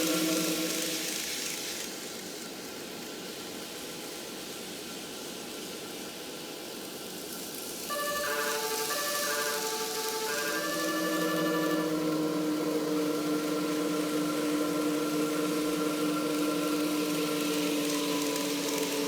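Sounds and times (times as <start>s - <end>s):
train running noise from speaker: 0.0s - 2.4s, 7.6s - 19.0s
electronic chime melody: 7.9s - 19.0s.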